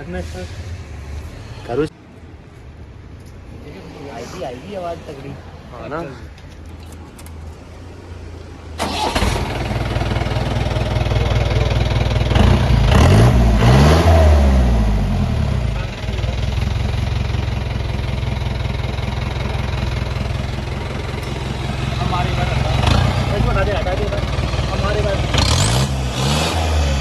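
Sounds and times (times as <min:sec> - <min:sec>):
engine idling: 0:05.8 - 0:27.0
jeep engine starting and revving: 0:07.2 - 0:27.0.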